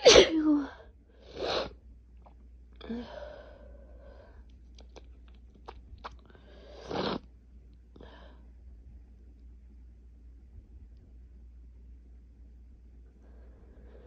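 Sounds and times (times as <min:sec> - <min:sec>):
person sneezing: 0:00.0 - 0:00.7.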